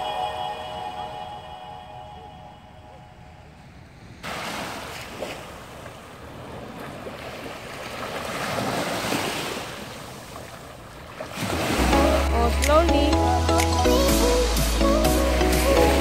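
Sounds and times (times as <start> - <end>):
sea waves washing onto beach: 4.1 - 16.0.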